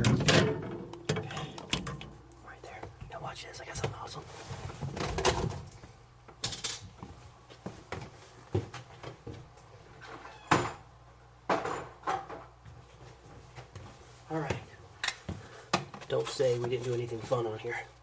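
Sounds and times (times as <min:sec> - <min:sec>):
objects knocking and clattering: 0:00.0 - 0:02.2, 0:11.5 - 0:12.6.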